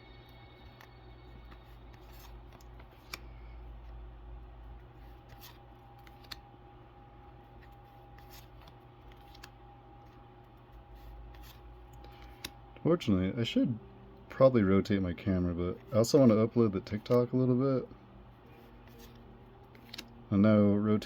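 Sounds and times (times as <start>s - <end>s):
steady low hum: 0.0s - 21.0s
cards and wrappers rustling: 0.6s - 4.0s, 4.8s - 6.5s, 7.2s - 12.6s, 15.6s - 17.5s, 18.4s - 20.2s.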